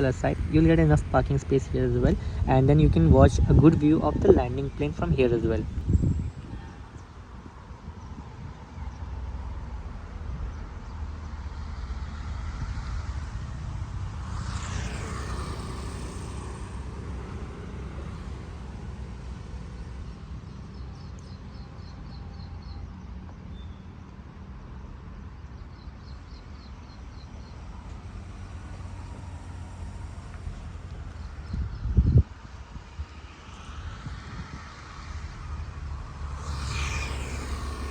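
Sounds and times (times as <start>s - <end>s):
steady low rumble: 0.0s - 8.5s, 27.6s - 37.9s
vehicle passing by: 0.0s - 21.6s, 27.0s - 37.9s.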